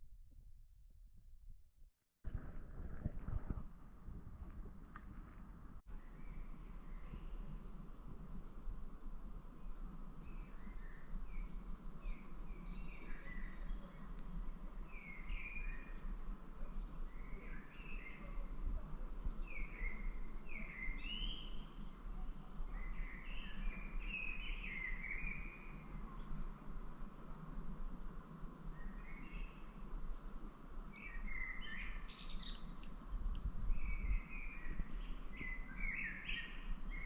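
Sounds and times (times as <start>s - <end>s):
steady background hiss: 6.1s - 18.3s, 19.3s - 33.1s
small birds chirping: 9.4s - 26.3s, 30.9s - 37.0s.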